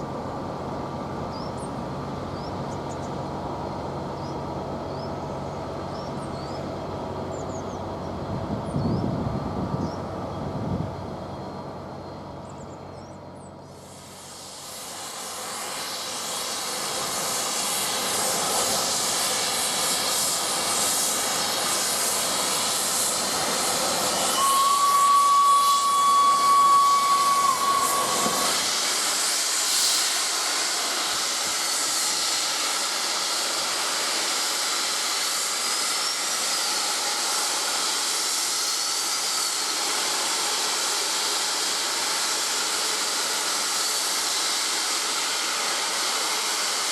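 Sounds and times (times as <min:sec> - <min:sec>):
steam locomotive blowing off steam: 0:13.4 - 0:46.9
steam whistle: 0:24.2 - 0:30.3.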